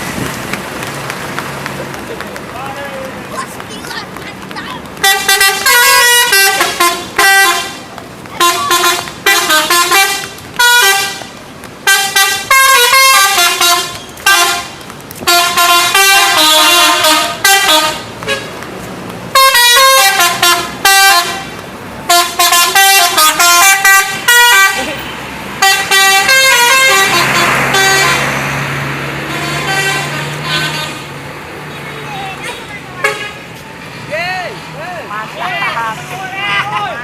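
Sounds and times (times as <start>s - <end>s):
bus musical horn playing tunes: 5.0s - 18.6s, 19.3s - 31.2s, 32.5s - 33.6s.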